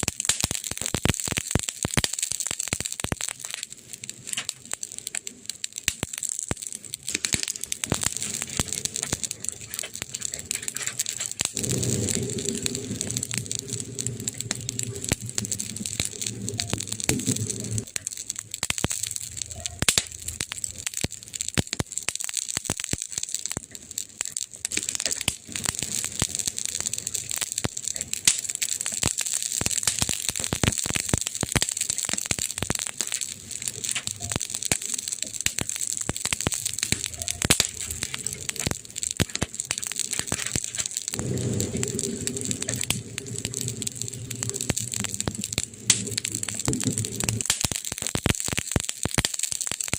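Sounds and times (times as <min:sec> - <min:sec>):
wood fire crackling: 0:00.0 - 0:49.9
low rumble: 0:07.8 - 0:18.5, 0:39.8 - 0:47.5.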